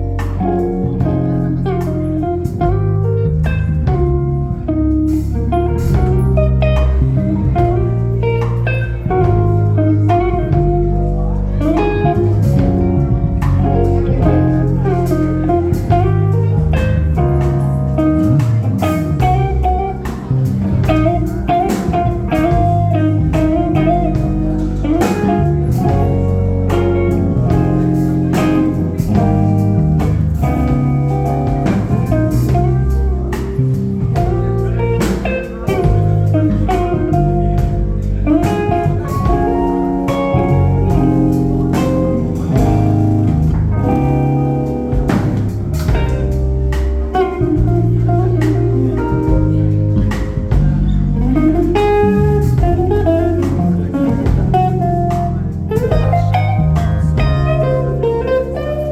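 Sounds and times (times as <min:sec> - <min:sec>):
bass line: 0:00.0 - 0:58.9
blues guitar lead: 0:00.0 - 0:58.9.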